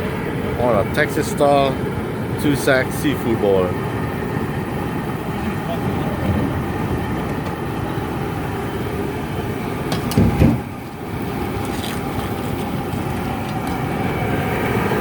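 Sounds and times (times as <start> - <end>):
gas burner roaring: 0.0 - 15.0
low thud with clicks: 9.9 - 10.7.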